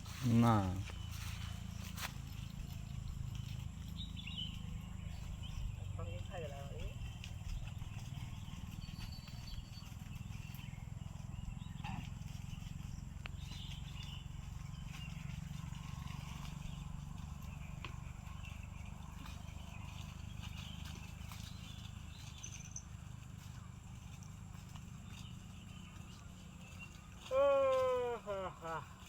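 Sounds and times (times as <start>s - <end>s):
faint bird chirps: 0.0s - 23.2s.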